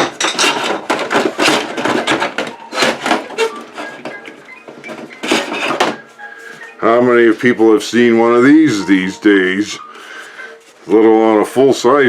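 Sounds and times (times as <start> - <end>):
metal and plastic knocking: 0.0 - 6.0
computer parts clattering: 0.0 - 6.1.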